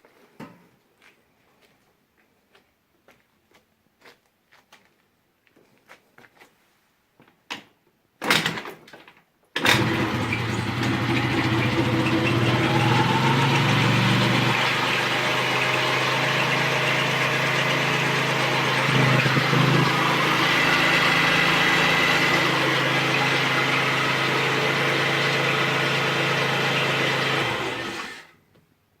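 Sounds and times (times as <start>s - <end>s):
scooter engine idling: 9.6s - 28.3s
engine squeak: 9.7s - 28.2s.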